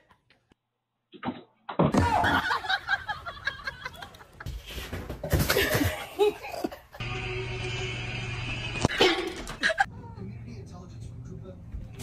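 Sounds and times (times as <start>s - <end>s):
people laughing: 2.0s - 4.5s, 5.5s - 7.0s, 8.9s - 9.9s
people talking: 9.8s - 12.0s.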